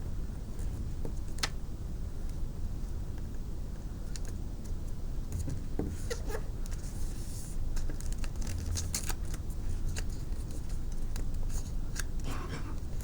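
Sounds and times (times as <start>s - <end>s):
paper crinkling and rustling: 6.0s - 12.6s.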